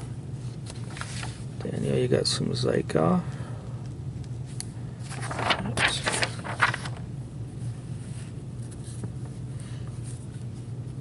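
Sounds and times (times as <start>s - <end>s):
low electrical hum: 0.0s - 11.0s
cards rustling and sliding: 0.5s - 1.5s, 4.5s - 7.1s.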